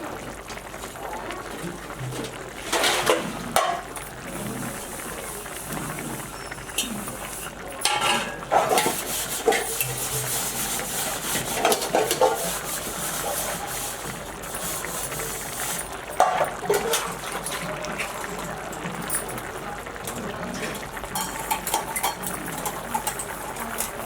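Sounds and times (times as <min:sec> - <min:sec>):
food sizzling in a pot: 0:00.0 - 0:24.0
metal spoon scraping a pot: 0:02.1 - 0:03.8, 0:05.7 - 0:18.3, 0:20.6 - 0:24.0.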